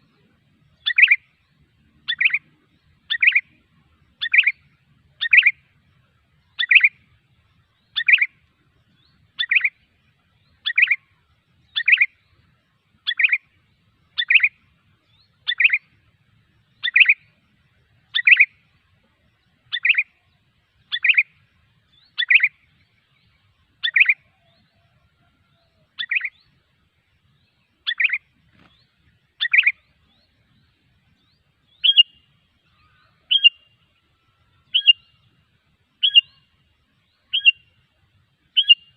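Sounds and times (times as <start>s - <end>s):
bird call repeated: 31.8s - 33.7s, 34.7s - 35.1s, 36.0s - 36.5s, 37.3s - 37.7s, 38.6s - 38.9s.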